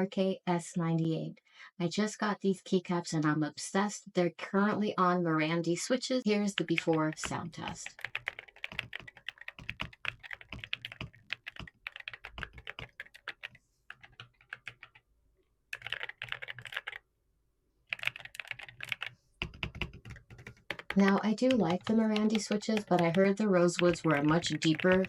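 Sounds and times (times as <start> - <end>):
mechanical keyboard typing: 6.5 - 15.0, 15.7 - 17.0, 17.9 - 25.0.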